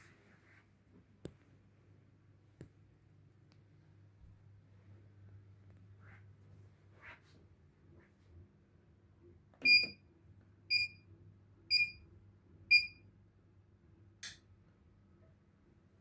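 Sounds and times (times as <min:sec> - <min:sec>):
faint low hum: 0:00.0 - 0:16.0
sharp click: 0:14.2 - 0:14.5.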